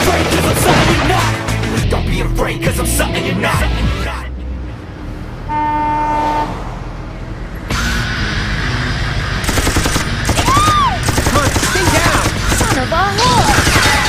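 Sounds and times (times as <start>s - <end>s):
automatic gunfire: 9.4s - 14.0s.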